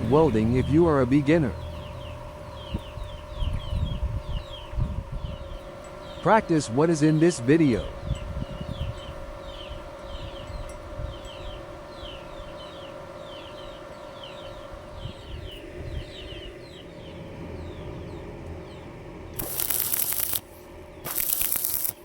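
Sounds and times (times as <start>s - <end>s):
welding arc crackling sizzle: 0.0s - 15.0s, 19.2s - 22.0s
birds chirping: 0.0s - 22.0s
steady hum: 0.0s - 22.0s.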